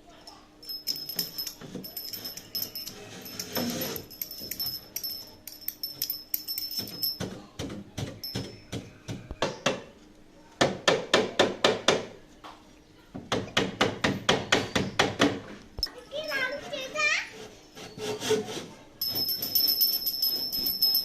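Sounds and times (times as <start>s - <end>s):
hand tool working wood: 1.0s - 5.2s, 16.3s - 21.0s.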